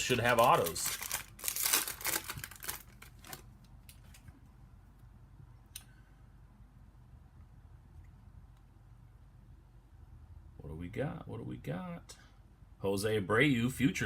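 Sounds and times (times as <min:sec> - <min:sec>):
wrapper crinkling and tearing: 0:00.0 - 0:04.3.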